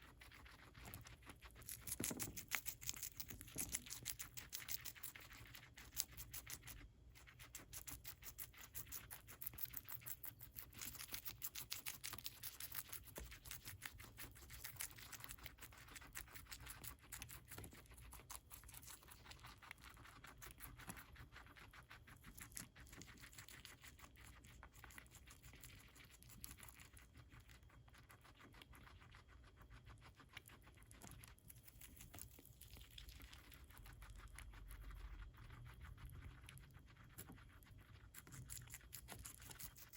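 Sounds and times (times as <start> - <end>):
guinea pig chewing lettuce: 0.0 - 39.9.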